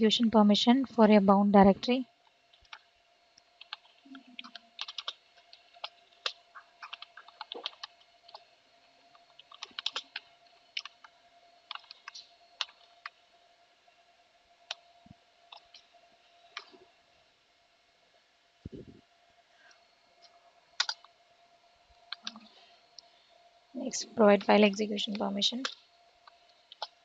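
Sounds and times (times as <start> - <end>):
faint steady hum: 0.0 - 27.0
keyboard typing clicks: 3.6 - 8.4, 9.2 - 11.1, 11.7 - 13.2, 20.8 - 21.1.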